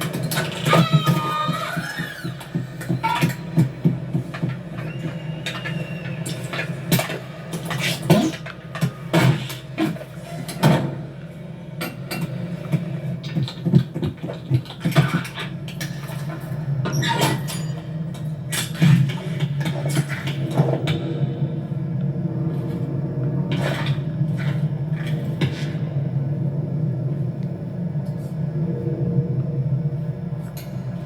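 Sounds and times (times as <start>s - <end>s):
low machine hum: 0.0s - 31.0s.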